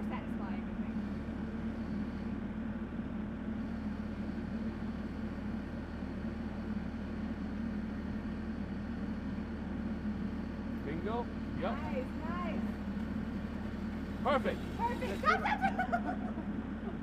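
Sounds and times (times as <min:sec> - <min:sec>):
excavator engine running: 0:00.0 - 0:17.0.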